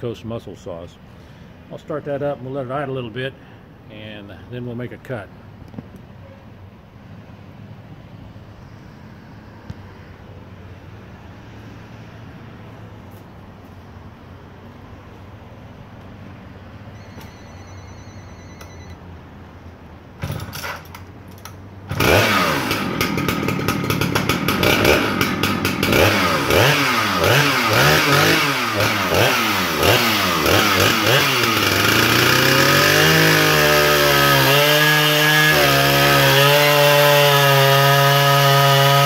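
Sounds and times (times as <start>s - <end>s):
chainsaw engine starting and revving: 20.2s - 39.0s.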